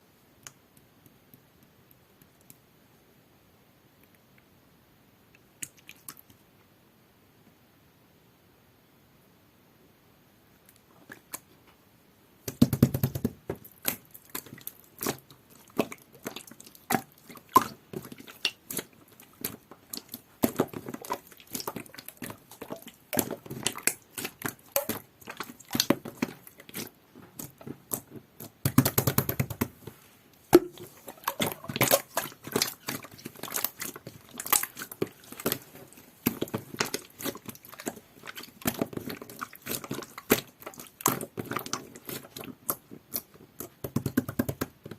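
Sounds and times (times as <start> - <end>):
slime clicking and crackling: 12.5 - 29.7, 30.6 - 44.6
slime squelching: 12.5 - 44.6.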